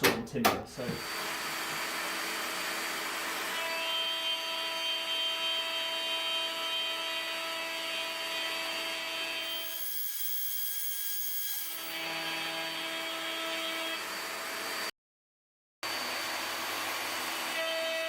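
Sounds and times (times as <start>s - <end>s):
electric router whining: 0.9s - 3.6s, 15.9s - 18.0s.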